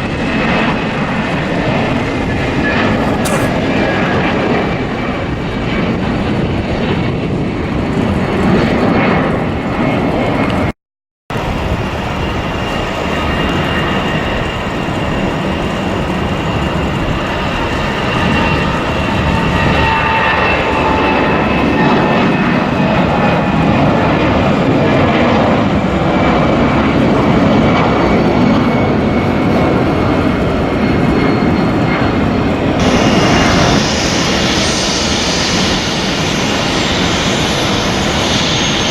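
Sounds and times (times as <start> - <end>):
jet airliner engines whining: 0.0 - 10.7, 11.3 - 38.9.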